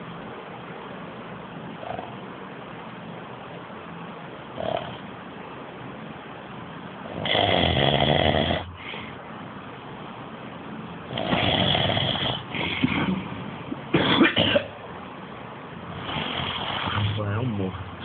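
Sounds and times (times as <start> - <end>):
man snoring loudly: 7.1 - 8.7, 11.1 - 12.5
quiet breathing: 8.7 - 9.3.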